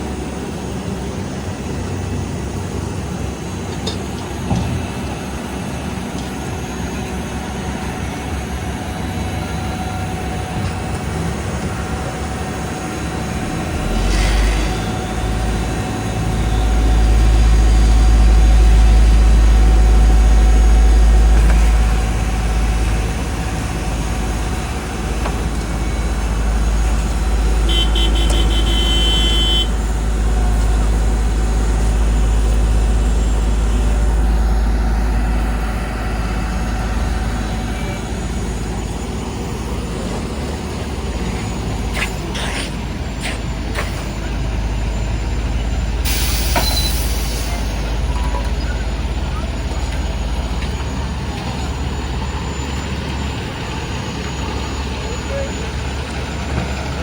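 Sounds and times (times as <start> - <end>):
diesel engines rumbling: 0.0 - 57.0.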